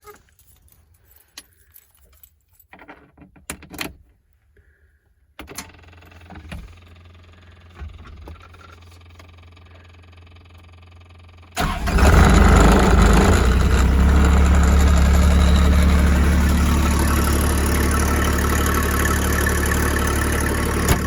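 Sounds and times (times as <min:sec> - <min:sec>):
keys jangling: 0:00.0 - 0:02.8
vehicle engine starting and idling: 0:05.9 - 0:21.0.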